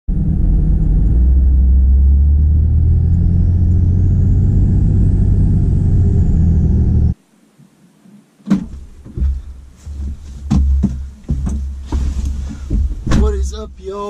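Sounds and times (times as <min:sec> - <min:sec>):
diesel engine running: 0:00.1 - 0:07.2.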